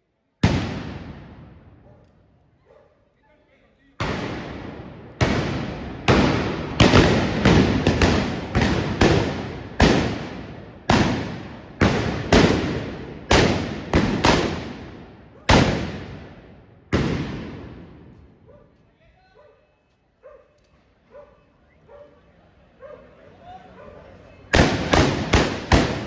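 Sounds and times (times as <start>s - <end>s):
blunderbuss blasts echoing: 0.4s - 1.8s, 4.0s - 18.4s, 24.5s - 26.0s.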